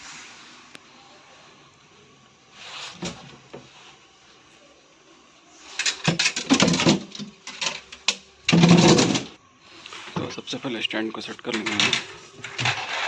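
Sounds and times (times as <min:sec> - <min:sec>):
metal tools clattering: 0:05.7 - 0:09.4, 0:11.5 - 0:13.0.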